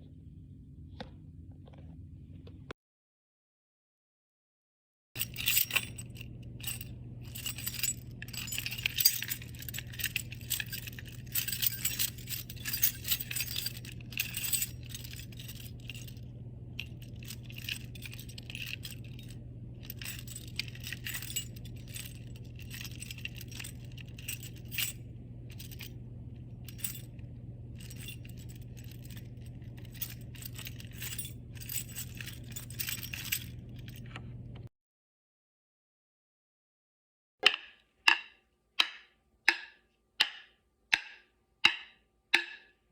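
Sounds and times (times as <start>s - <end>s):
steady low hum: 0.0s - 2.7s, 5.2s - 34.7s
small hard objects jingling: 5.2s - 25.9s, 27.8s - 34.0s.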